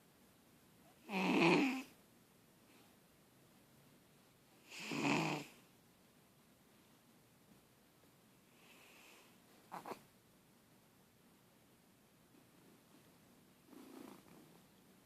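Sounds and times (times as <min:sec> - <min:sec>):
cat snoring: 0:01.0 - 0:01.9, 0:04.6 - 0:05.6, 0:13.7 - 0:14.5.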